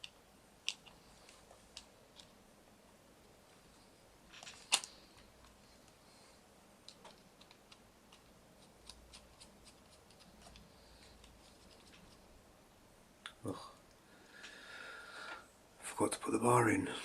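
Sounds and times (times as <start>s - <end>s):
small ticks: 6.9s - 12.2s.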